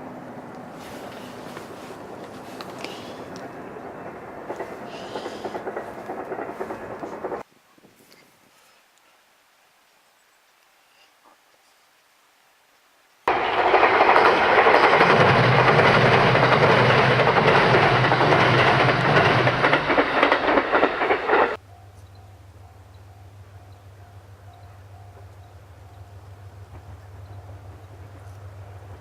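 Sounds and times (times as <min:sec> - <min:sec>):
train wheels clattering: 0:00.5 - 0:07.4, 0:13.3 - 0:21.6.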